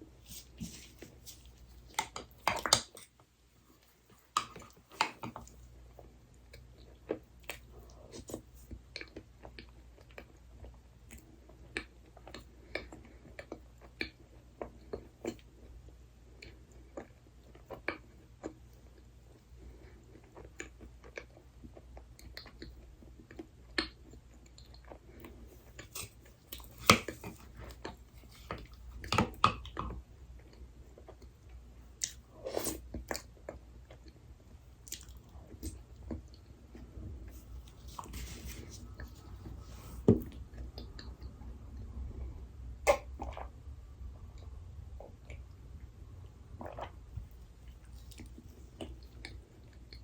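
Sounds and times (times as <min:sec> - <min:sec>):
chewing and biting: 0:34.8 - 0:36.4.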